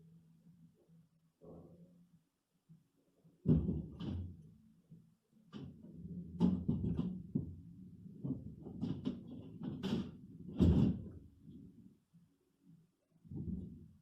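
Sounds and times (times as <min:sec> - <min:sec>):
irregular knocks and clunks: 0:03.4 - 0:04.4, 0:05.5 - 0:07.6, 0:08.2 - 0:11.2.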